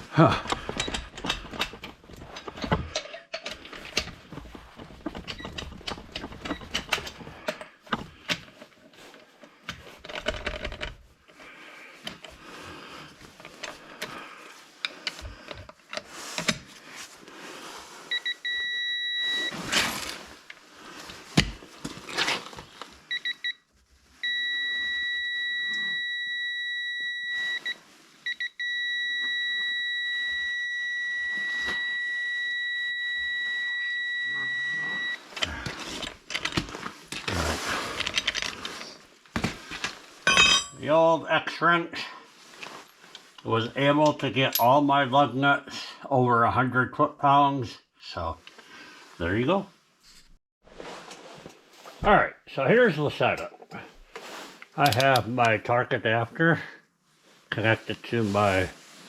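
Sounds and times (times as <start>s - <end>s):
metal tools clicking and clanking: 0.4s - 8.4s, 40.3s - 40.8s, 54.8s - 55.6s
electronic beep: 24.2s - 35.2s.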